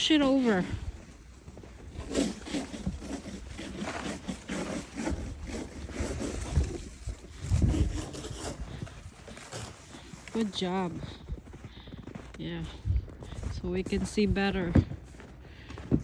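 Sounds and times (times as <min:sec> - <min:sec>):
snow shovel scraping: 0:00.0 - 0:11.7, 0:13.4 - 0:16.0
wind on microphone: 0:05.1 - 0:09.4.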